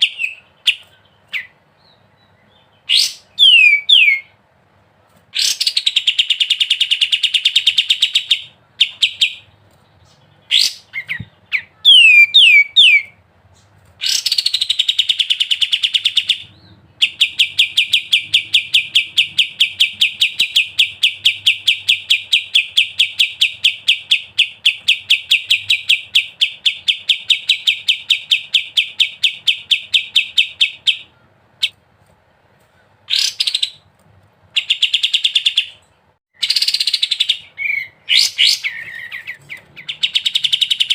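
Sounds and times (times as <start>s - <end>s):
songbird trilling: 2.8s - 4.3s, 10.1s - 13.2s.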